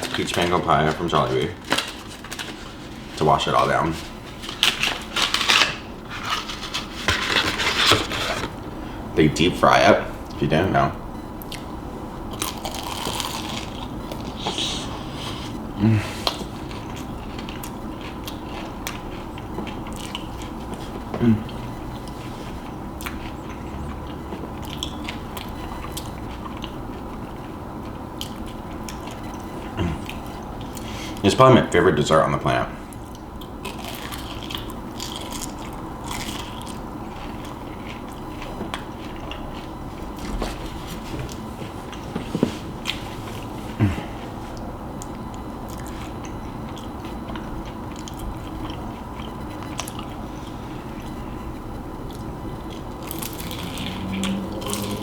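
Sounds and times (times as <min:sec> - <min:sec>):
chewing crisp crunches: 0:12.3 - 0:14.5, 0:16.2 - 0:31.2, 0:32.9 - 0:40.4, 0:42.8 - 0:55.0.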